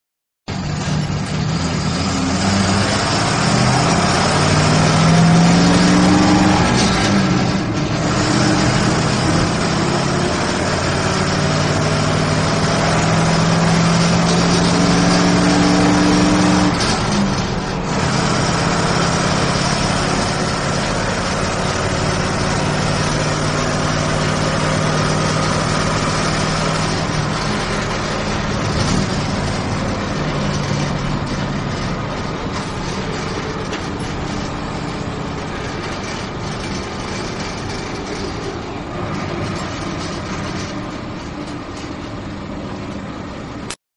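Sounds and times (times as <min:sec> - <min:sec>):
bus engine accelerating: 0:00.5 - 0:43.8.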